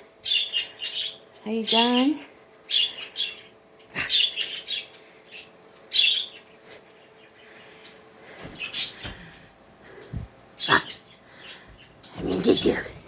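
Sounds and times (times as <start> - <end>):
budgies chirping: 0.2 - 13.0.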